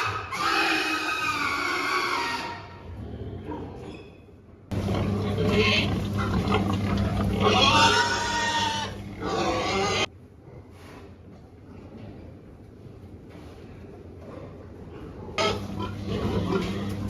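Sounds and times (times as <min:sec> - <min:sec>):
pigs grunting and squealing: 0:00.0 - 0:04.1, 0:04.7 - 0:10.1, 0:15.0 - 0:17.0
steady low hum: 0:04.7 - 0:10.1, 0:15.4 - 0:17.0.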